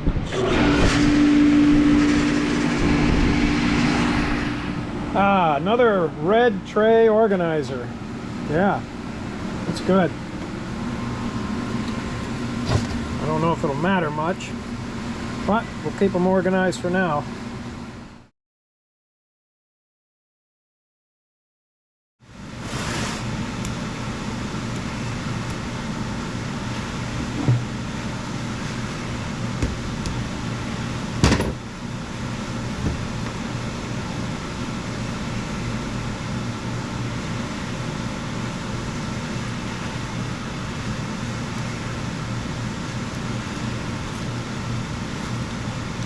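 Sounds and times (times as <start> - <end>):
parts-cleaning machine motor hum: 0.0 - 16.6, 32.4 - 46.0.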